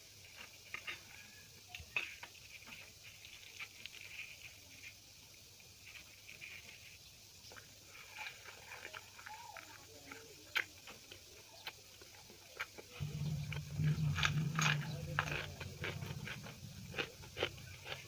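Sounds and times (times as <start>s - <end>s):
wet chewing mouth sounds: 8.4s - 18.0s
low hum: 13.0s - 18.0s.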